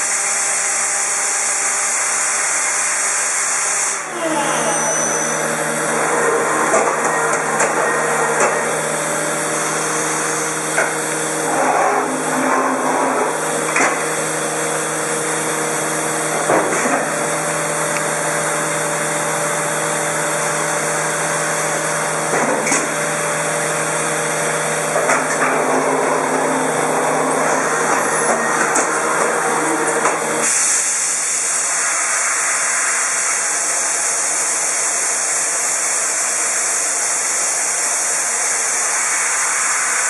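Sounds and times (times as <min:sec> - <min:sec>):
dust extraction running: 0:00.0 - 0:40.0
trimming machine cutting plastic: 0:03.0 - 0:31.0.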